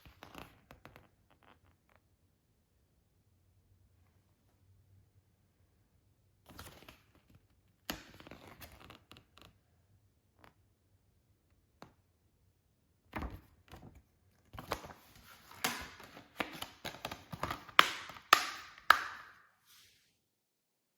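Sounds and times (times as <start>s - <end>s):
packaging clicks and snaps: 14.6s - 19.3s.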